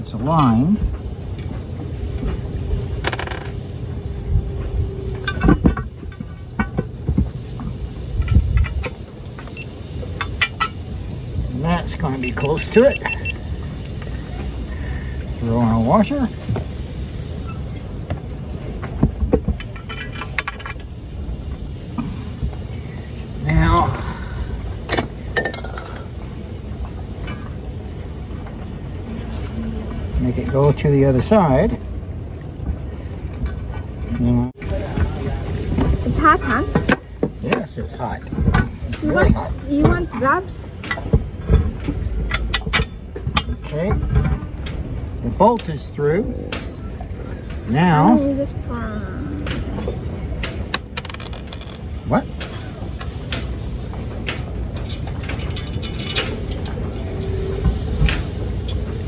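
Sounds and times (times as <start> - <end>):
low background hum: 0.0 - 59.0
metal anchor parts clinking: 19.6 - 21.0, 24.9 - 26.3, 50.4 - 56.8.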